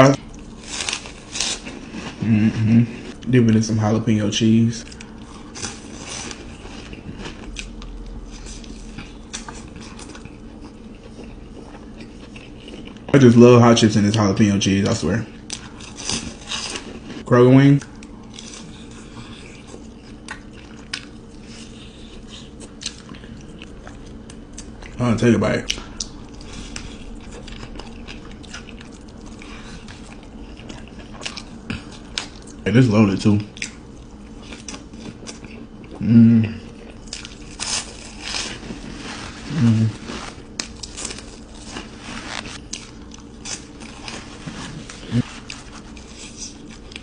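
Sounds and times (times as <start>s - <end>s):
chewing crunchy chips: 4.8s - 47.0s.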